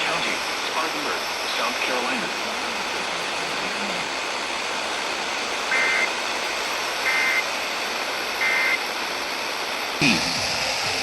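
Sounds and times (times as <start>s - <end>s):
radio hiss: 0.0s - 11.0s
two-tone data bursts: 5.7s - 6.2s, 7.0s - 7.5s, 8.4s - 8.8s.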